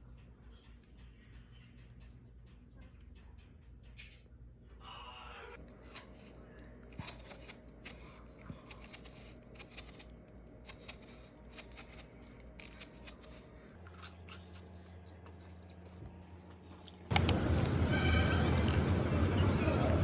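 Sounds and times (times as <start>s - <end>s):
crisp snipping or crunching: 5.6s - 14.6s.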